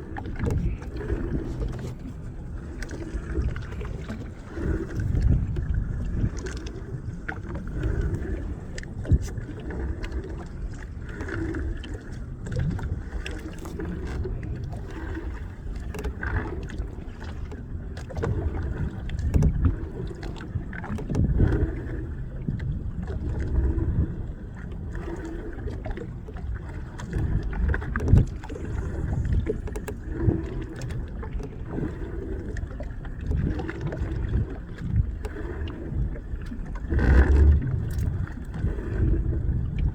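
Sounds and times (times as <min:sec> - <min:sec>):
wind buffeting microphone: 0:00.0 - 0:10.8, 0:18.0 - 0:24.7, 0:25.7 - 0:39.9
low rumble of water: 0:00.0 - 0:39.9.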